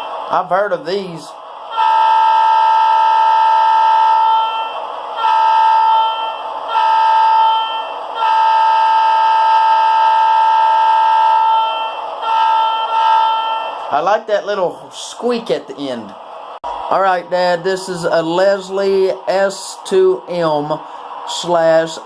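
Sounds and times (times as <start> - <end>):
model train horn through small speaker: 1.7 - 13.7.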